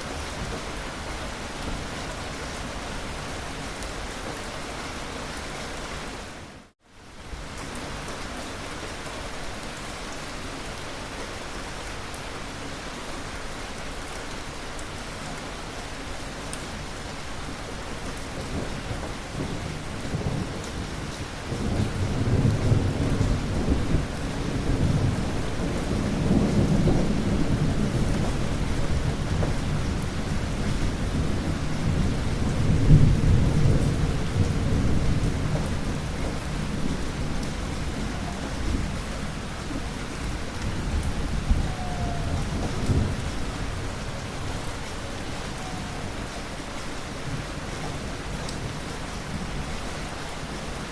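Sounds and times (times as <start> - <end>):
steady rain: 0.0 - 50.9
rolling thunder: 18.3 - 46.3.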